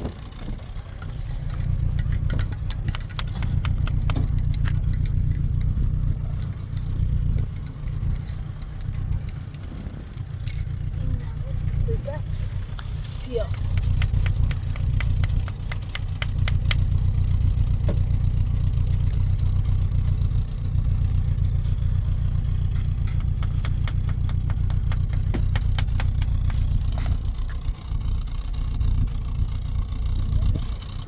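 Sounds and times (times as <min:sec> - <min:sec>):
engine low rumble: 0:00.0 - 0:31.0
rapid faint clicking: 0:00.0 - 0:31.0.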